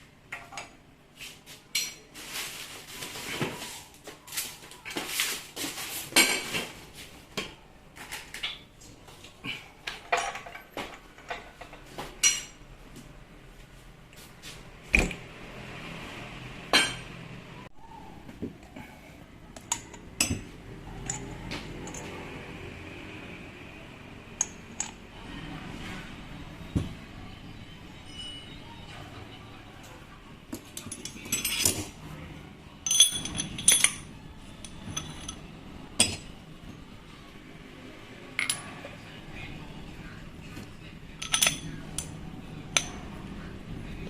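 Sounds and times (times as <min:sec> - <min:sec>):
metal parts clinking and knocking: 0:30.6 - 0:31.9, 0:32.8 - 0:35.4, 0:41.2 - 0:42.2.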